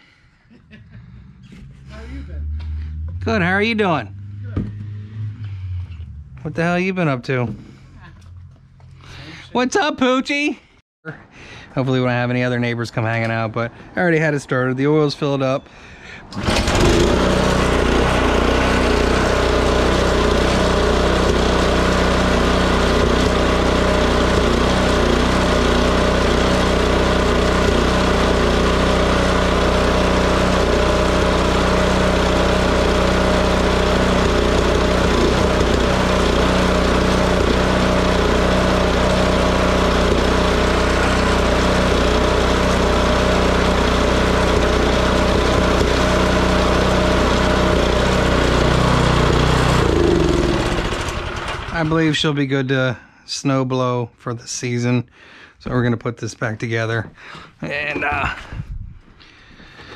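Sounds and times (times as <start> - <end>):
snowblower engine running: 0.8 - 9.4, 16.2 - 52.3.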